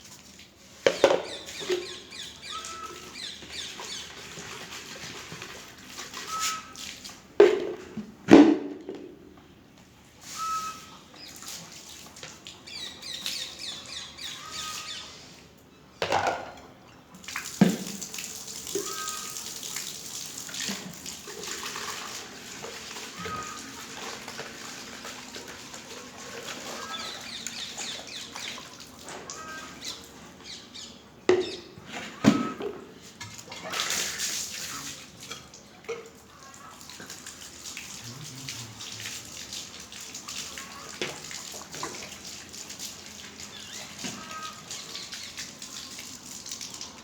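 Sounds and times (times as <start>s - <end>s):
water running from a tap: 17.2s - 29.6s, 36.8s - 47.0s.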